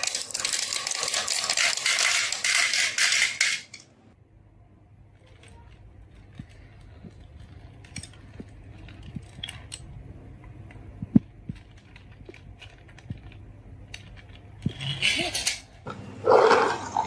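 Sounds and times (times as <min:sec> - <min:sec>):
marbles rattling down wooden run: 0:00.0 - 0:03.7.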